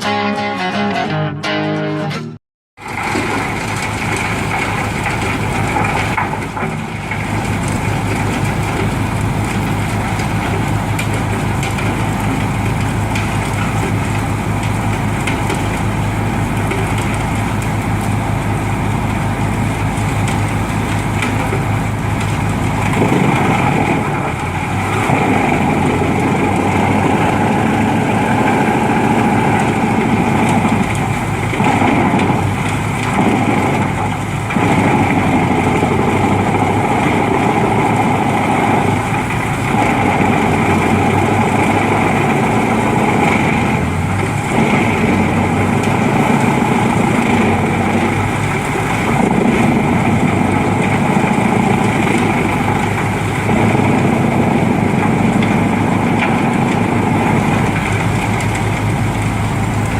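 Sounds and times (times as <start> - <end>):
wood chipper engine running: 2.8 - 59.9.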